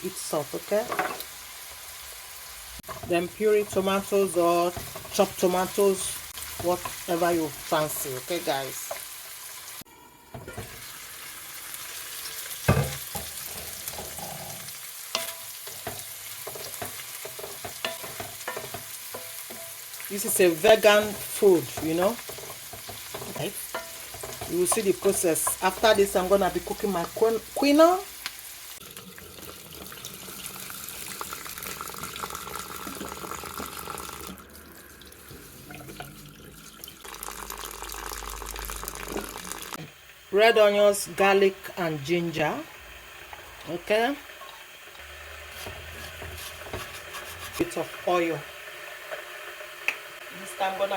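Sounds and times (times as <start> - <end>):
food sizzling in a pot: 0.0 - 50.9
tap water running into sink: 28.8 - 39.8.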